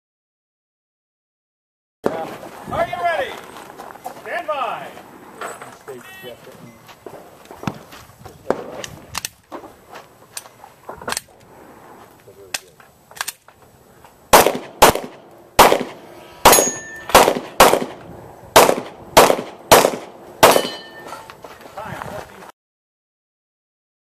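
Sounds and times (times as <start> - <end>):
pistol shots: 14.3 - 21.0.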